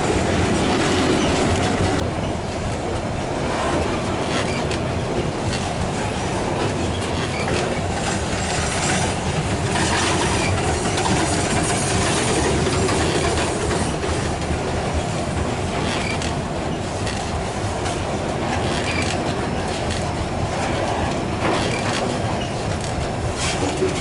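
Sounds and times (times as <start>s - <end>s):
train wheels rumbling on rails: 0.0s - 24.0s
clicks over rail joints: 3.6s - 24.0s.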